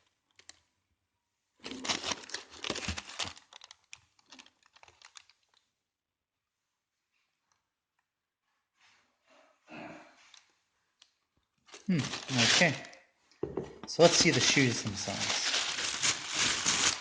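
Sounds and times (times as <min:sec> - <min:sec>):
paper wrapping crinkling: 0:01.6 - 0:05.6, 0:11.6 - 0:12.9, 0:13.9 - 0:17.0.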